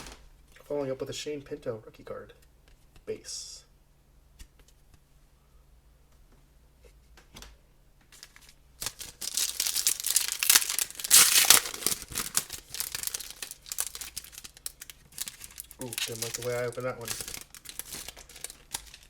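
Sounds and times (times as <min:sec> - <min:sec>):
wrapper crinkling and tearing: 0:08.1 - 0:19.0.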